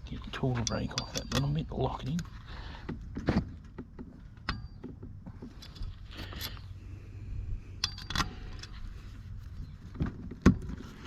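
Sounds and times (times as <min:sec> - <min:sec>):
metal hand tools clinking: 0:00.6 - 0:01.8.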